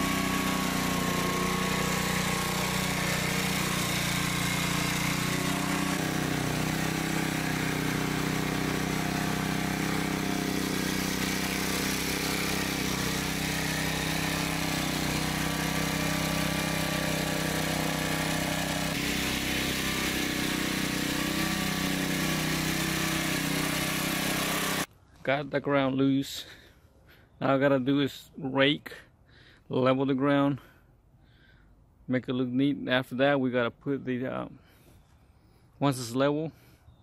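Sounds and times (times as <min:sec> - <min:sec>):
garden tiller engine running: 0:00.0 - 0:24.9.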